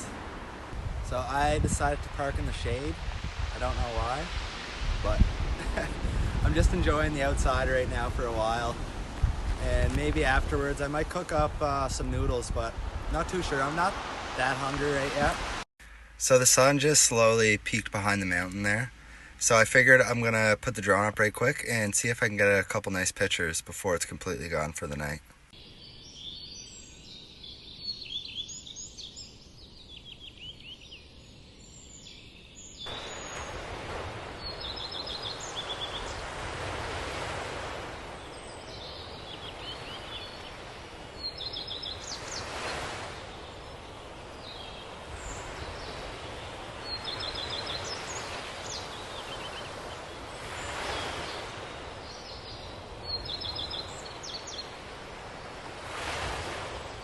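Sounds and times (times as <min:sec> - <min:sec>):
steady rushing noise: 0:00.0 - 0:15.6
small birds trilling: 0:25.6 - 0:57.0.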